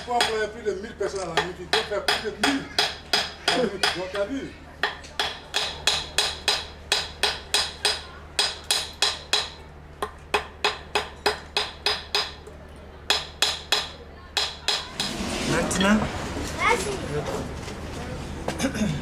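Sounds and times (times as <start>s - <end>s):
hammer striking metal: 4.8s - 12.4s, 13.1s - 15.2s.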